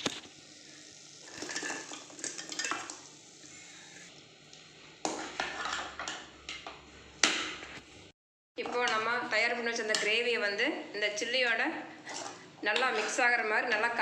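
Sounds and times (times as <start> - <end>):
metal spoon scraping a pan: 5.0 - 6.2, 8.6 - 10.3, 12.0 - 13.8.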